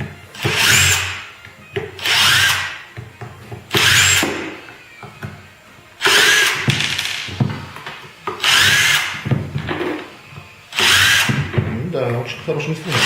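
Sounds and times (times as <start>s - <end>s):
power drill-driver bursts: 0.4s - 1.3s, 2.0s - 2.8s, 3.8s - 4.4s, 6.0s - 6.7s, 8.4s - 9.2s, 10.7s - 11.5s.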